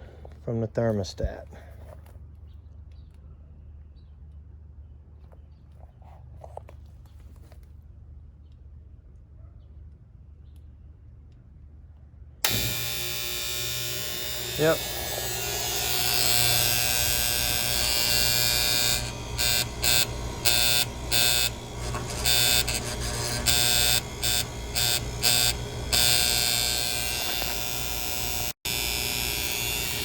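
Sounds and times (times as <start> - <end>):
contactor electrical buzz: 12.4 - 30.0.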